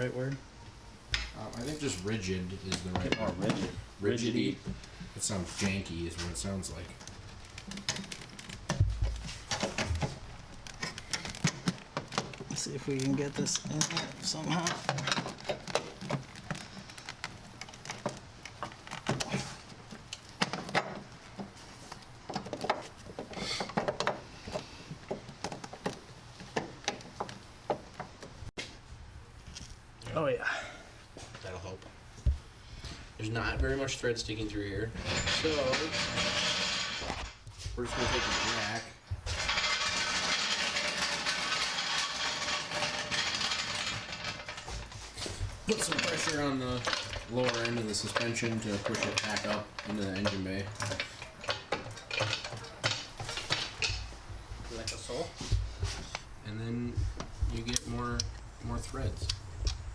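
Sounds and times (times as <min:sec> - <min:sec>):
metal parts clinking and knocking: 0:07.6 - 0:19.5, 0:35.0 - 0:54.2
car jack rattling and clicking: 0:38.1 - 0:45.0, 0:45.7 - 0:54.1.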